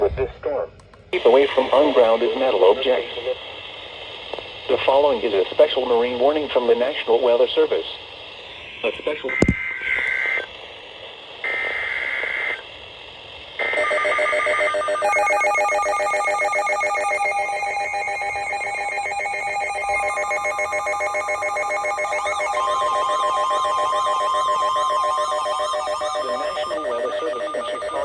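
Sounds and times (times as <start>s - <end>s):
shrill digital data bursts: 13.6s - 28.0s
warbling electronic alert tone: 15.0s - 28.0s.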